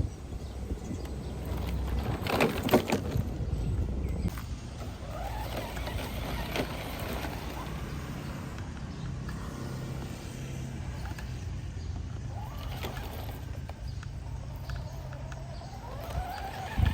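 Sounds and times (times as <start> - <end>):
remote-control car motor humming: 3.6 - 16.9
motor whines rising and falling: 3.9 - 16.9.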